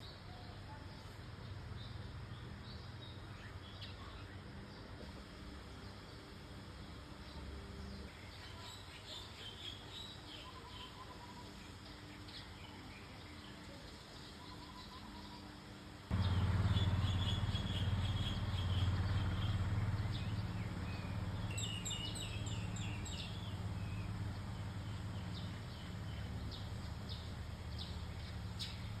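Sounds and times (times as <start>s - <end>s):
birds chirping and trilling: 7.9s - 29.0s
steady low hum: 14.1s - 29.0s.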